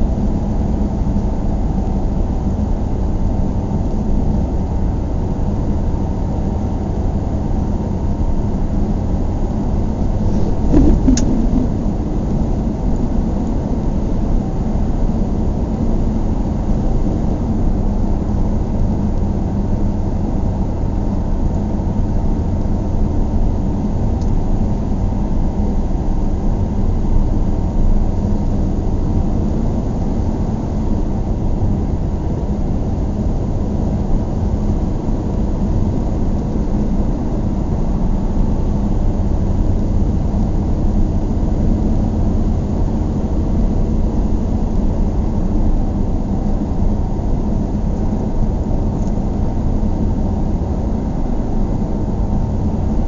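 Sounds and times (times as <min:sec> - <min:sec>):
car road and engine rumble: 0:00.0 - 0:18.4
car bump: 0:10.3 - 0:12.0.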